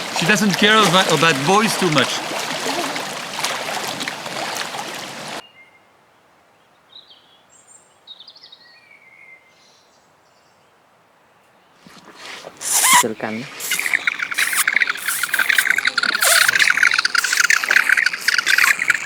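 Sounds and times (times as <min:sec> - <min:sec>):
running water rushing: 0:00.0 - 0:05.4, 0:12.1 - 0:19.0
faint bird chirps: 0:12.6 - 0:19.0.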